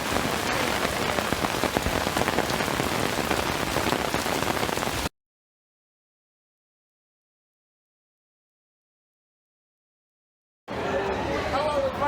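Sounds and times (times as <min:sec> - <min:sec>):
heavy rain falling: 0:00.0 - 0:05.1.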